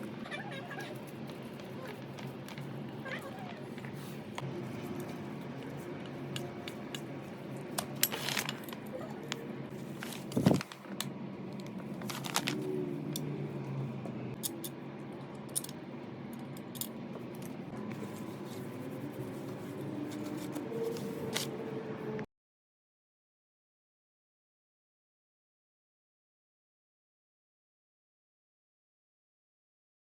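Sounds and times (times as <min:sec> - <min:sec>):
metal parts and tools clinking: 0:06.0 - 0:08.9, 0:14.4 - 0:18.3.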